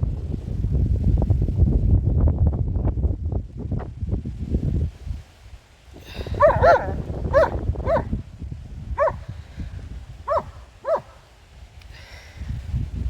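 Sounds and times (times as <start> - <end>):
dog barking: 6.3 - 8.1, 9.0 - 9.2, 10.3 - 11.2.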